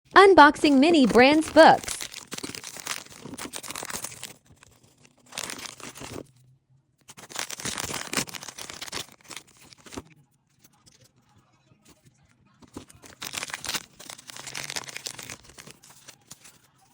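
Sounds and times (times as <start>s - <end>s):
plastic packaging crinkling: 1.9s - 4.4s, 5.2s - 6.2s, 7.2s - 10.0s, 13.0s - 16.5s.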